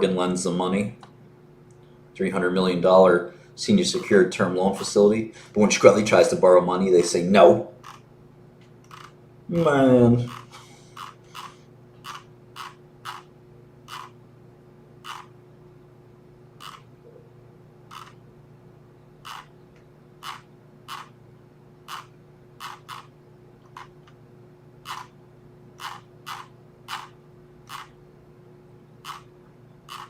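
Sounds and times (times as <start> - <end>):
faint electrical hum: 0.0 - 30.0
computer mouse clicking: 8.8 - 9.1, 10.3 - 13.2, 13.9 - 14.1, 15.0 - 15.3, 16.6 - 16.9, 17.9 - 18.2, 19.2 - 19.5, 20.2 - 21.1, 21.9 - 24.2, 24.8 - 25.1, 25.8 - 28.0, 29.0 - 29.3.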